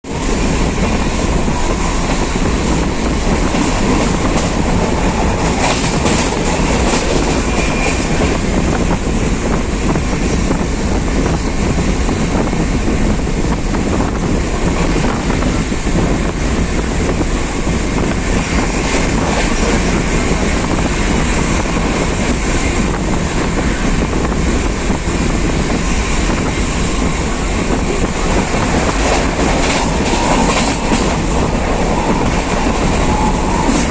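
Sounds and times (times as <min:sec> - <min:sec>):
train wheels on rails: 0:00.0 - 0:33.9.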